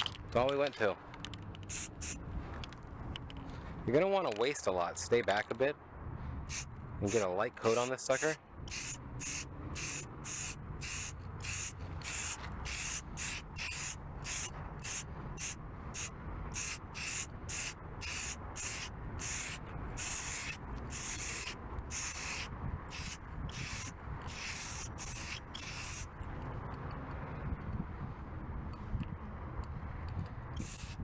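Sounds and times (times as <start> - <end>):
low wind rumble: 0.0 - 4.2, 4.8 - 7.3, 8.4 - 31.0
aerosol spray can hissing: 1.7 - 2.2, 6.5 - 26.1, 30.6 - 31.0.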